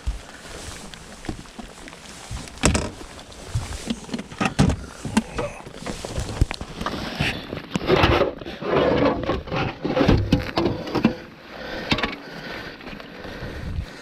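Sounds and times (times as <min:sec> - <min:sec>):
fish and gear handled in boat: 0:00.0 - 0:14.0.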